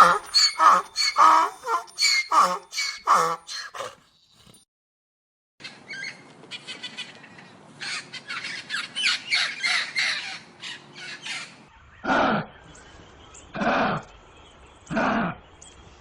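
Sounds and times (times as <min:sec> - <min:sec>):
birds giving harsh calls: 0:00.0 - 0:04.0
deep animal call: 0:00.0 - 0:04.0.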